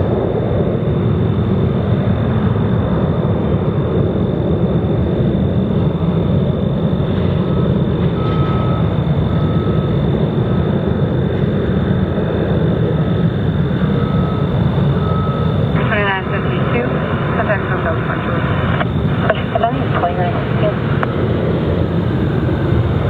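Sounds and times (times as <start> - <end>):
jet engines rumbling: 0.0 - 23.0
vehicle reversing beeper: 6.4 - 23.0.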